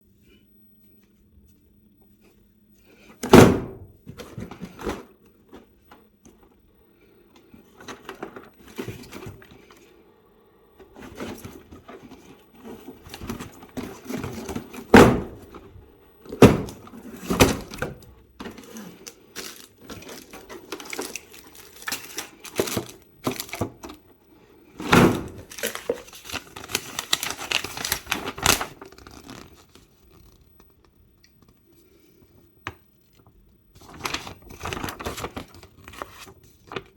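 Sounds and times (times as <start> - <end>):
packaging rustling: 16.3 - 24.0, 25.2 - 31.6, 33.0 - 36.9.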